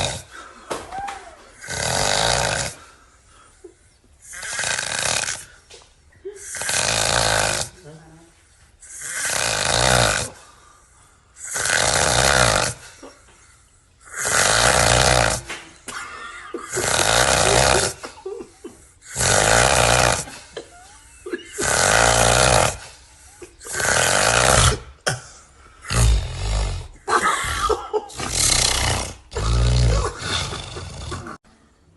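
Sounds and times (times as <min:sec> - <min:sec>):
loud rasping snoring: 0:00.0 - 0:00.4, 0:01.6 - 0:02.9, 0:04.2 - 0:05.6, 0:06.4 - 0:08.0, 0:08.8 - 0:10.5, 0:11.4 - 0:13.0, 0:14.0 - 0:15.6, 0:16.7 - 0:18.1, 0:19.0 - 0:20.4, 0:21.5 - 0:25.0, 0:25.8 - 0:31.4
quiet breathing: 0:10.3 - 0:11.4.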